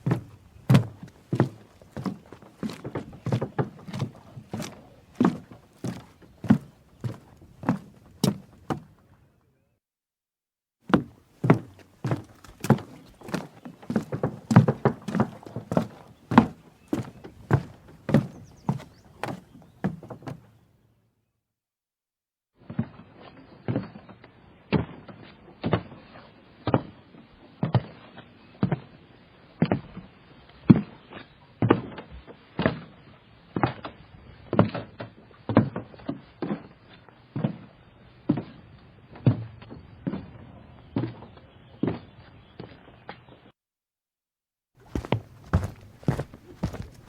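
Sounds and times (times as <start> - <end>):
footsteps on wooden dock: 0.0 - 9.0, 10.9 - 20.6, 44.8 - 47.0.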